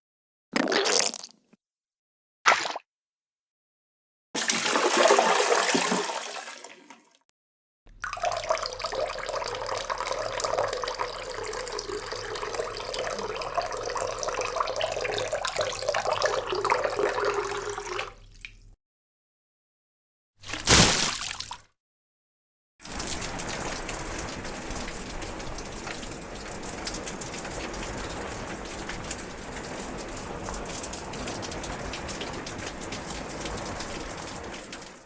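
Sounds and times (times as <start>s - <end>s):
water splash: 4.4s - 7.0s, 20.4s - 21.6s
rushing water: 20.5s - 21.6s, 22.9s - 35.0s.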